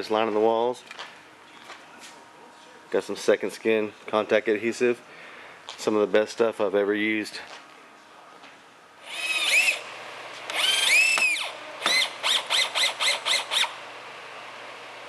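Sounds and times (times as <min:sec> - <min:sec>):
power drill motor revving: 0:09.0 - 0:14.0.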